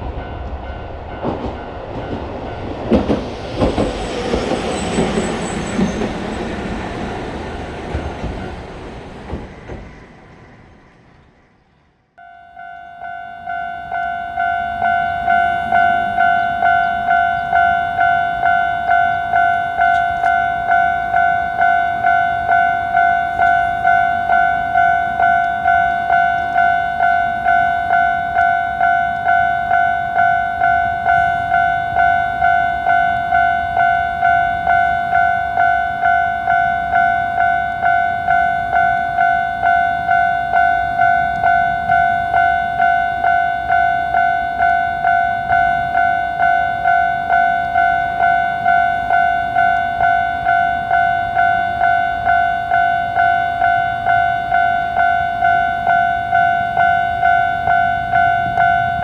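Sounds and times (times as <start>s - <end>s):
level crossing electronic bell: 12.2s - 59.0s.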